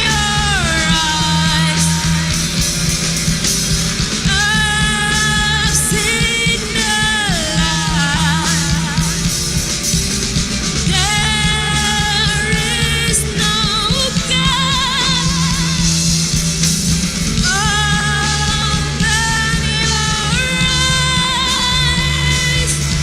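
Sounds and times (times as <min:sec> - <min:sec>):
vocalist singing long notes: 0:00.0 - 0:02.5, 0:04.2 - 0:09.3, 0:10.9 - 0:16.0, 0:17.4 - 0:23.0
rock band playing: 0:00.0 - 0:23.0.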